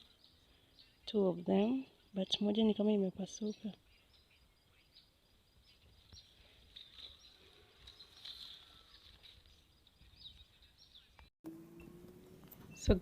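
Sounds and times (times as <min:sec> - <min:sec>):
distant birds chirping: 0:00.0 - 0:13.0.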